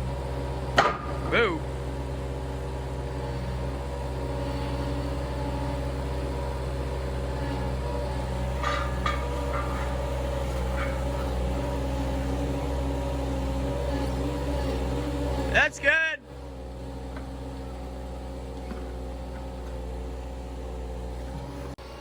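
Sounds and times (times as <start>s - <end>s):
skid steer engine running: 0.0s - 22.0s
short metal clanks: 8.5s - 11.8s.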